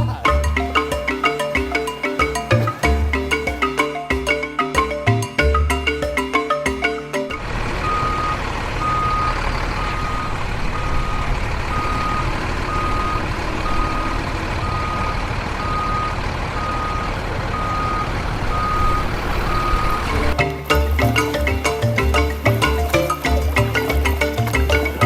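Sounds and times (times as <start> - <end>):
electronic beeps: 7.8 - 20.4.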